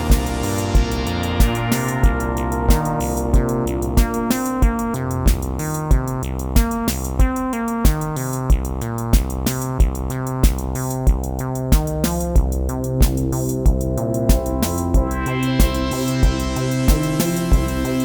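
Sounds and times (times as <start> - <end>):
sustained synth chords: 0.0 - 6.7, 12.7 - 18.0
drum machine pattern: 0.0 - 18.0.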